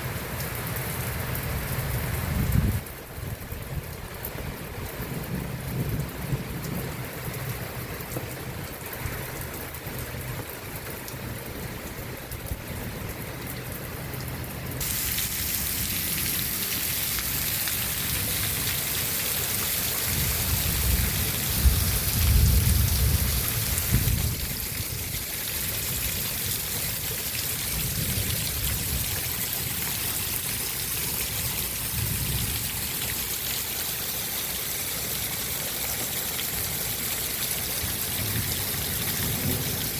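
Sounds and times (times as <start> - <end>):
heavy rain hissing: 14.8 - 39.9.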